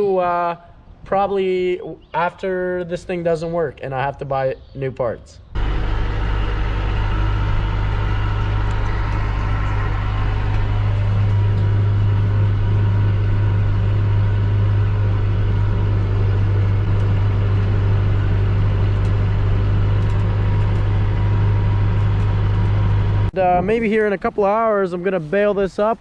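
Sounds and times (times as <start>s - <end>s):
engine droning steadily: 5.6s - 23.4s.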